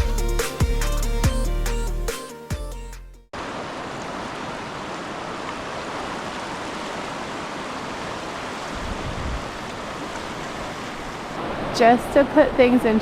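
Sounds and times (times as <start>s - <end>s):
flowing river water: 3.4s - 13.0s
wind buffeting microphone: 8.0s - 13.0s.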